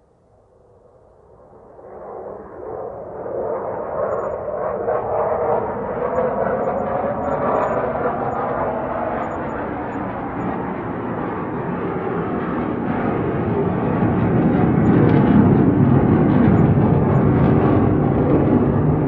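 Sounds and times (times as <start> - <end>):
military aircraft roaring overhead: 1.1 - 19.0.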